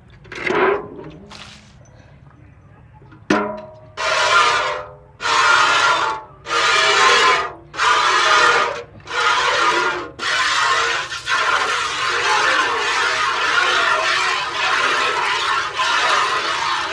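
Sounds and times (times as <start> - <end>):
milk squirting into a pail: 4.0 - 16.9.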